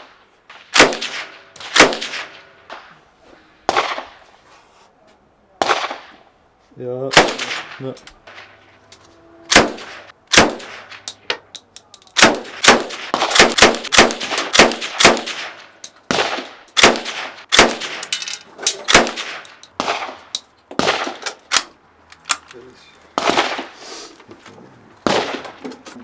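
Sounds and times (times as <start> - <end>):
gunshots with ringing echo: 3.7 - 4.2, 7.1 - 8.6, 9.5 - 11.1, 12.2 - 18.1, 18.7 - 21.2.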